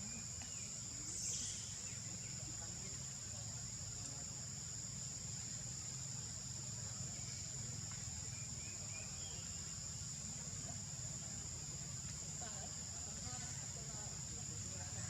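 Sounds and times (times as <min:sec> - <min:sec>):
faint chirps: 0:00.0 - 0:04.2
high-pitched insect chorus: 0:00.0 - 0:15.0.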